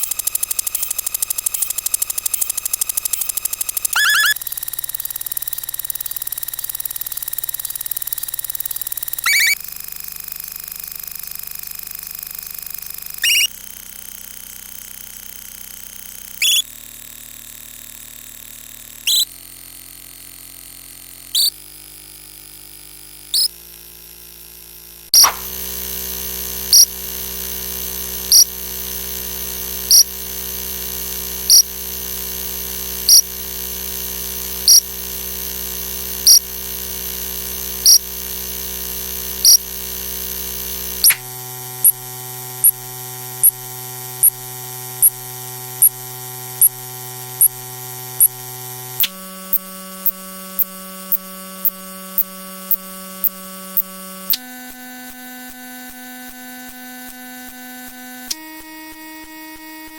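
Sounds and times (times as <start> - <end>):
electronic buzzing hum: 0.0 - 59.9
short sharp electronic blips: 3.9 - 4.4, 9.2 - 9.6, 13.2 - 13.5, 16.4 - 16.6, 19.1 - 19.3, 21.4 - 21.6, 25.2 - 25.5, 41.0 - 42.0.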